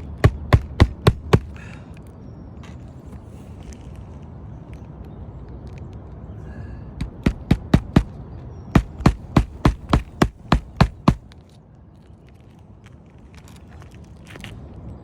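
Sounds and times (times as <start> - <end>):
hammer striking nails: 0.0 - 1.6, 7.0 - 8.2, 8.8 - 11.2.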